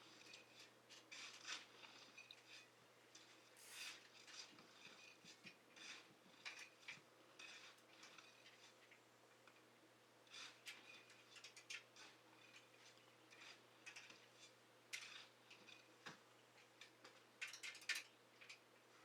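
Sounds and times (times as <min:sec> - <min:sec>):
small tools clicking and clinking: 0:10.4 - 0:18.7.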